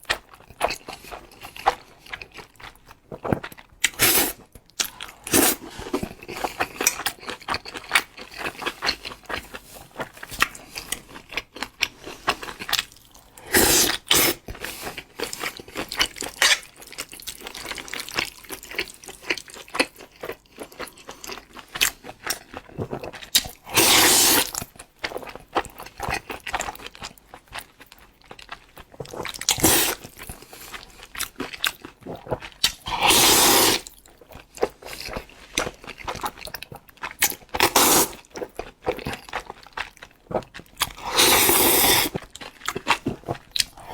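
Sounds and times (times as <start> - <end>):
wet chewing and mouth clicks: 0.0 - 43.9
slurping noodles: 4.0 - 4.4, 5.3 - 6.1, 13.4 - 15.0, 23.7 - 24.6, 29.5 - 30.1, 32.9 - 33.9, 37.6 - 38.2, 41.0 - 42.2.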